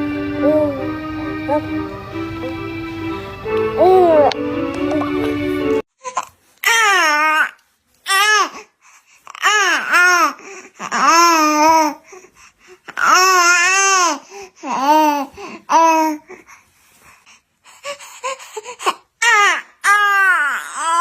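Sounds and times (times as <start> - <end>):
baby wailing: 3.8 - 4.4, 19.2 - 21.0.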